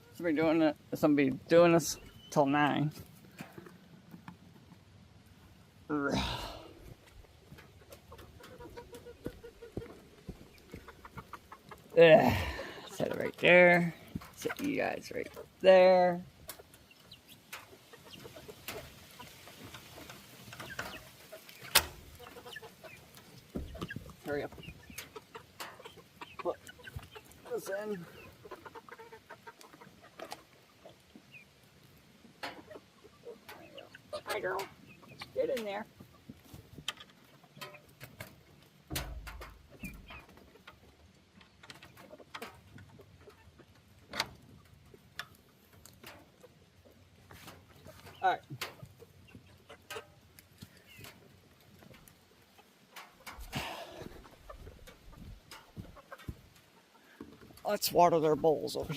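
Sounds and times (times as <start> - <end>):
chickens clucking: 0.0 - 58.9
chicken chirp: 20.6 - 27.4, 32.6 - 35.4.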